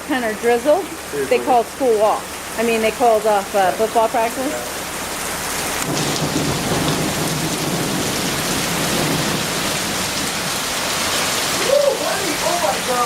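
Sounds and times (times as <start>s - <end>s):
heavy rain pouring: 0.0s - 13.0s
low rumble: 4.7s - 11.6s.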